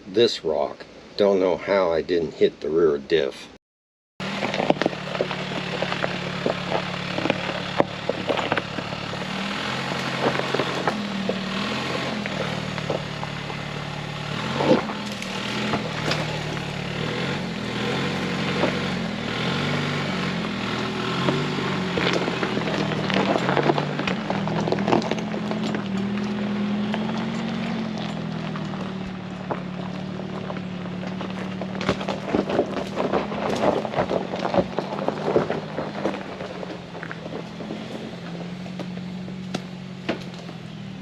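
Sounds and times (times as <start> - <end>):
rocks crunching under tyres: 4.2 - 41.0
truck engine at low revs: 4.2 - 41.0.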